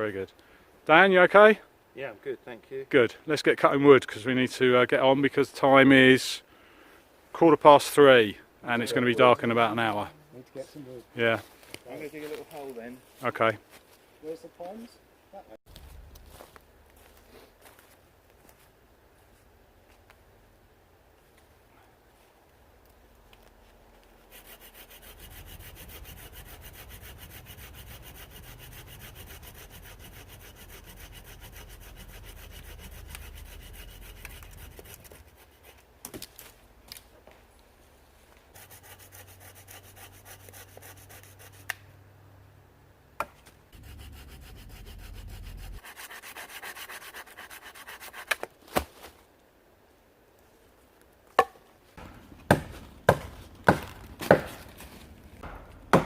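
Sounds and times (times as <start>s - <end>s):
hand saw cutting wood: 24.3s - 35.8s, 38.5s - 41.8s, 43.8s - 48.5s, 52.0s - 56.0s
wood being chopped: 51.3s - 56.0s.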